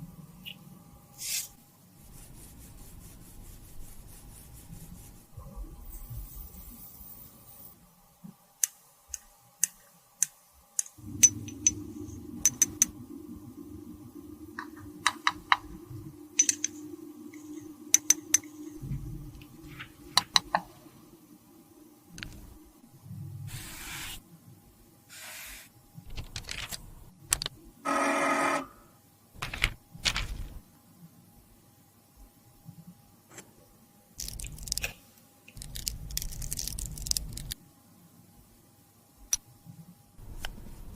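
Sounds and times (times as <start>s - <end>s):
steady low hum: 11.0s - 23.5s
short hissing bursts: 23.5s - 24.2s, 25.1s - 25.7s.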